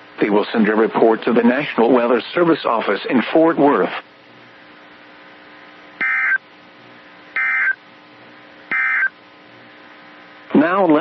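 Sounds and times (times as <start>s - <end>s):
faint hum: 0.0s - 11.0s
digital data tone bursts: 6.0s - 6.4s, 7.4s - 7.8s, 8.7s - 9.2s.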